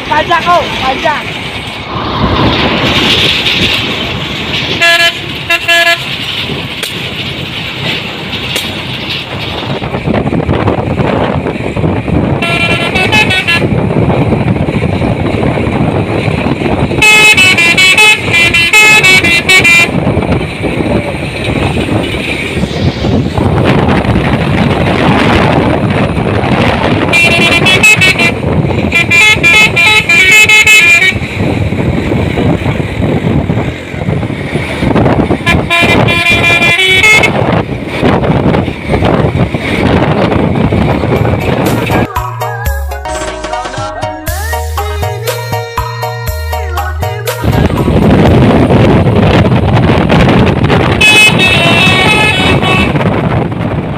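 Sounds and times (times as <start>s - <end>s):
engine and road rumble: 0.0s - 53.9s
musical truck horn melody: 4.7s - 6.1s, 12.4s - 13.8s, 17.0s - 20.1s, 27.0s - 31.2s, 35.4s - 37.6s, 41.6s - 48.0s, 51.0s - 53.0s.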